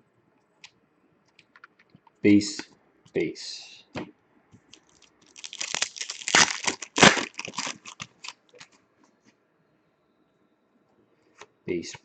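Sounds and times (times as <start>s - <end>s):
foil wrapper crinkling and tearing: 4.7s - 8.7s.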